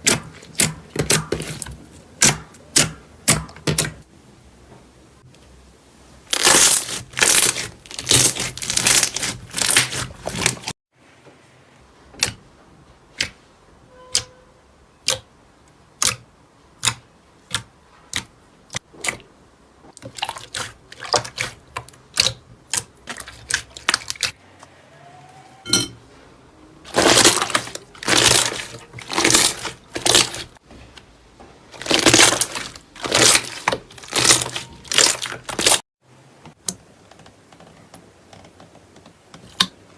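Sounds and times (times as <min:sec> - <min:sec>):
slime crackling and popping: 0:06.3 - 0:10.7, 0:26.9 - 0:30.6, 0:31.8 - 0:35.8.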